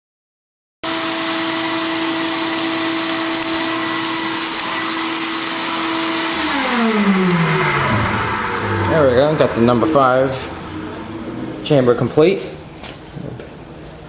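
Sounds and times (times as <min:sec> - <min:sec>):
motor whine: 0:00.9 - 0:12.0
blast cabinet hissing: 0:01.5 - 0:13.8.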